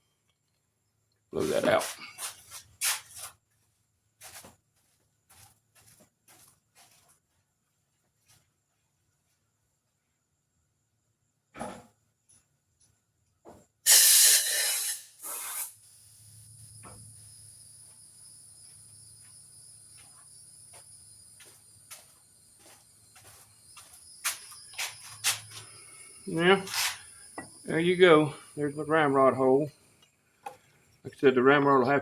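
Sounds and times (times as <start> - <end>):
crickets chirping: 0.0 - 3.3, 8.3 - 13.3, 13.9 - 32.0
blown air hissing: 13.9 - 18.4, 22.6 - 29.8.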